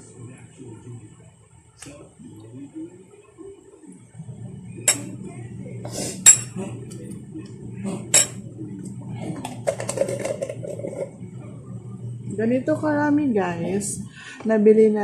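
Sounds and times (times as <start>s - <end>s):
spoon clinking against a dish: 4.9s - 5.2s, 6.2s - 6.6s, 8.1s - 8.4s.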